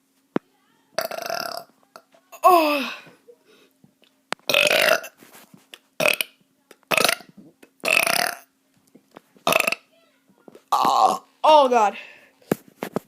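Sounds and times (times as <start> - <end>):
child burping: 1.0 - 1.7, 2.4 - 3.1, 4.5 - 5.2, 6.0 - 6.3, 6.9 - 8.5, 9.4 - 9.9, 10.7 - 11.3.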